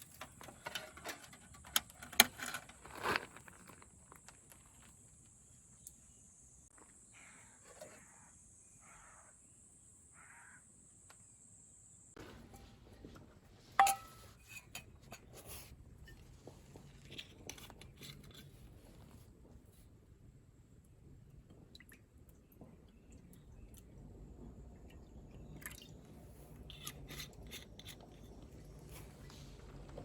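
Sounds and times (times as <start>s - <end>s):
sharp metallic clink: 13.8s - 14.4s.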